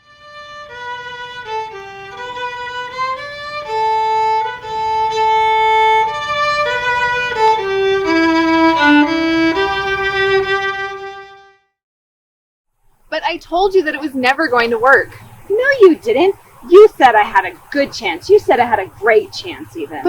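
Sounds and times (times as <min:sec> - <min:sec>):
slow violin melody: 0:00.0 - 0:11.7.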